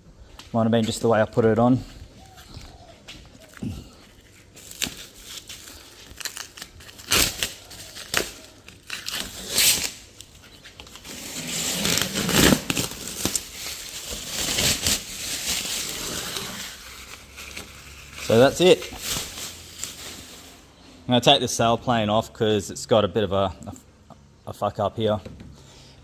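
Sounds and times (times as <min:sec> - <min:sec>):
tape tearing and rustling: 0:03.3 - 0:20.6
tape ripping off panels: 0:04.6 - 0:20.6.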